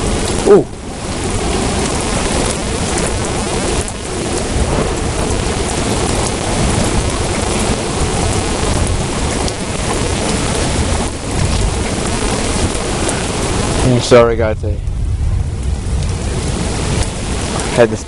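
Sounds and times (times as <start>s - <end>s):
heavy rain pouring: 0.0s - 18.0s
low rumble of thunder: 0.0s - 18.0s.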